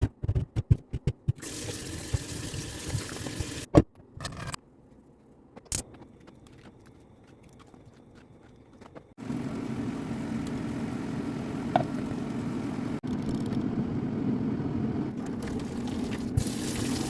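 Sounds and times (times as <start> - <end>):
tap running water: 1.4 - 3.7, 15.4 - 17.0.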